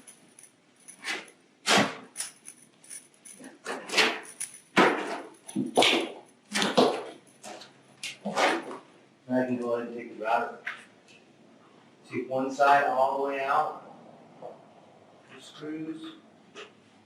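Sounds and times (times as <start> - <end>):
parts scraping and knocking: 0.0 - 8.9.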